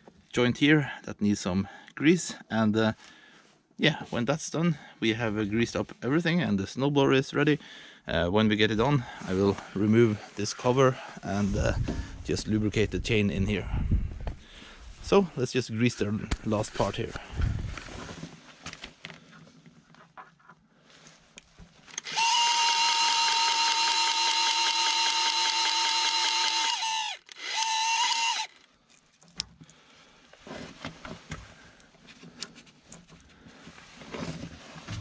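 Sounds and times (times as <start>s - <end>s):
grease gun motor whining: 22.0s - 28.8s.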